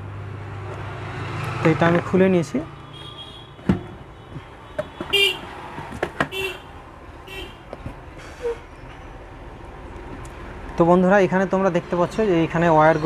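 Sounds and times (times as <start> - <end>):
vehicle horn toots: 2.8 - 5.5, 6.3 - 6.7, 7.3 - 7.6.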